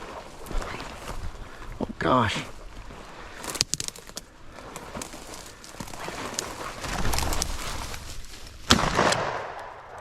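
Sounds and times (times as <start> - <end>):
footsteps crunching through dry grass: 0.0 - 9.1
shotgun shot: 8.7 - 9.8.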